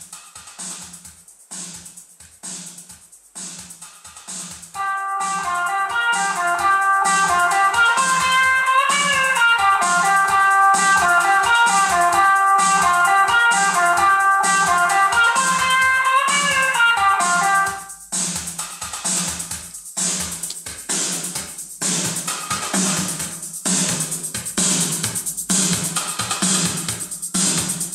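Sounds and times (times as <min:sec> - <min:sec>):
drum beat: 0:00.0 - 0:27.9.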